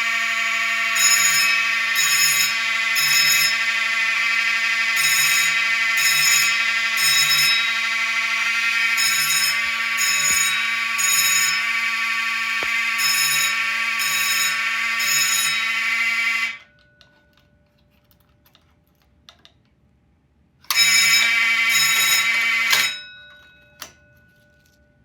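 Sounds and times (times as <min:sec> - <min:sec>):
fire alarm horn buzzing: 0:00.0 - 0:16.7, 0:20.7 - 0:23.0.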